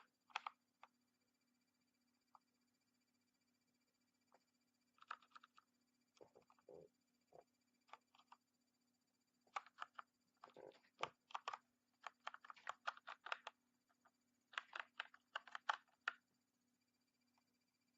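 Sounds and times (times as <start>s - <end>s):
mechanical keyboard typing: 0.3s - 0.5s, 5.0s - 5.6s, 9.5s - 13.6s, 14.5s - 16.2s.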